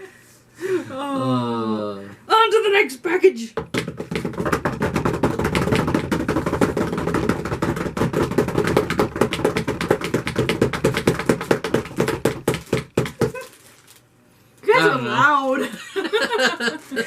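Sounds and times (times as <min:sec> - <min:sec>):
hands drumming on tabletop: 0:03.6 - 0:13.4.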